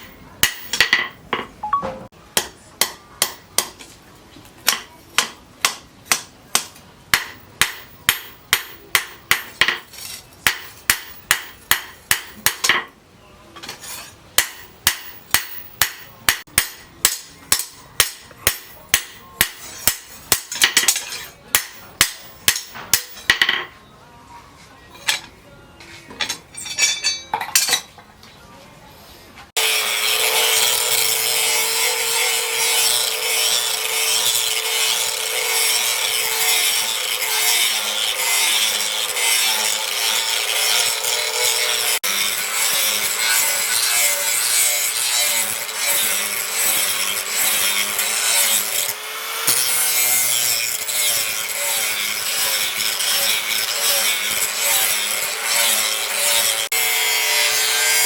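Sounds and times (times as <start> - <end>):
power tool noise: 29.6 - 58.0.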